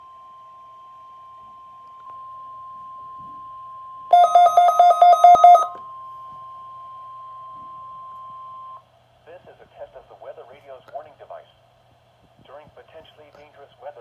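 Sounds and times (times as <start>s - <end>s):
rapid two-pitch electronic beeps: 4.2s - 5.7s
steady alert tone: 4.2s - 5.8s.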